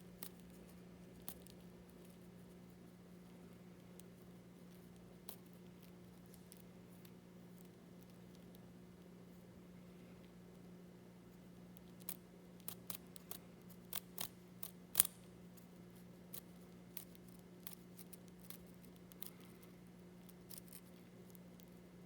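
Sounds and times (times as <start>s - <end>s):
steady low hum: 0.0s - 22.0s
insects clicking and crackling: 11.8s - 15.2s, 16.3s - 21.9s.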